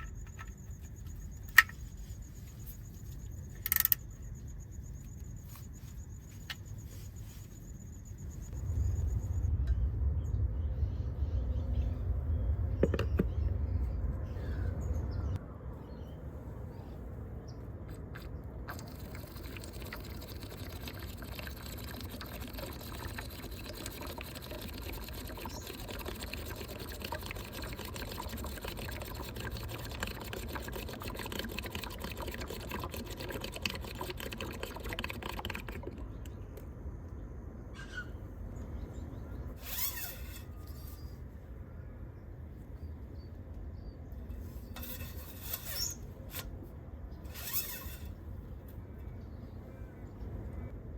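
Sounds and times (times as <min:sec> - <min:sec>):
low rumble: 0:08.4 - 0:15.7
oil pouring in a stream: 0:17.9 - 0:36.6, 0:47.3 - 0:48.2.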